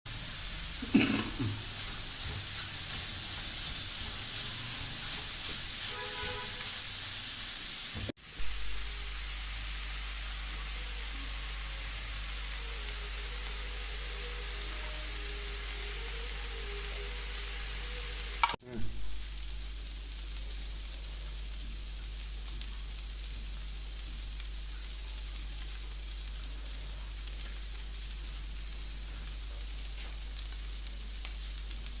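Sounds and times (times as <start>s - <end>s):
chicken sizzling in oil: 0.1s - 32.0s.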